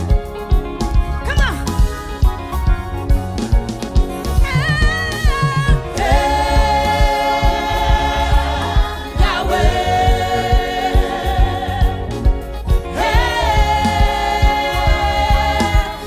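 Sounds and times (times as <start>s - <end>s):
steady drum beat: 0.0s - 16.0s
choir singing in harmony: 5.8s - 16.0s.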